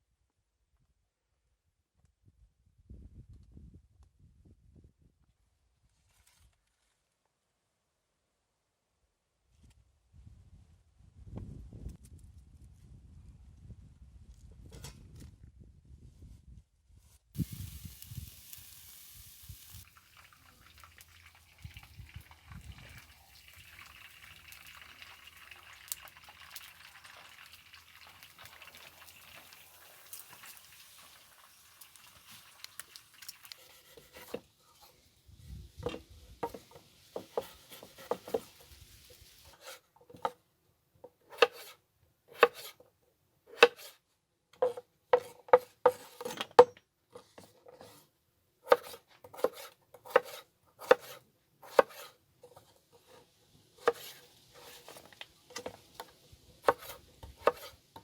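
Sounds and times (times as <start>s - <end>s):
faint handling and liquid sounds: 17.4s - 40.4s
knife chopping on cutting board: 37.2s - 38.5s, 41.3s - 41.8s, 42.4s - 42.7s, 43.5s - 44.0s, 48.7s - 52.1s, 53.8s - 55.0s, 56.6s - 57.7s.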